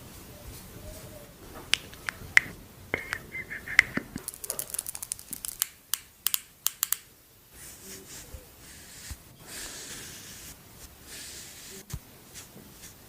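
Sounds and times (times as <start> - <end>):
taps and clicks of containers: 1.7 - 7.1.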